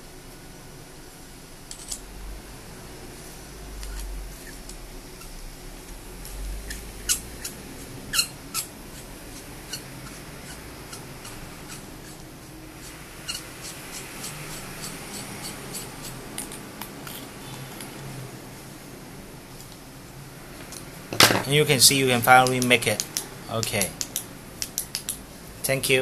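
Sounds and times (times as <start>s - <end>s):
metal parts clicking: 1.7s - 2.0s.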